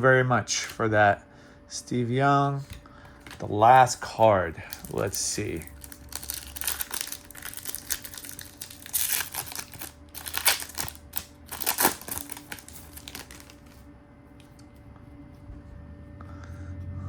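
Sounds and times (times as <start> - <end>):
foil wrapper crinkling: 4.6 - 13.8.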